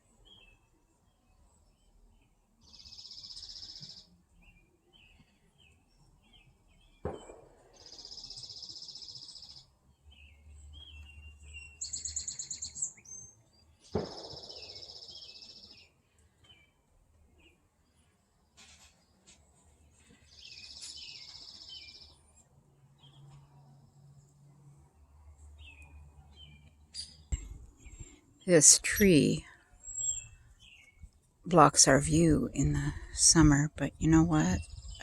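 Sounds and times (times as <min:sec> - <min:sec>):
songbirds chirping: 0:00.0 - 0:35.0
bird trill: 0:10.2 - 0:15.9.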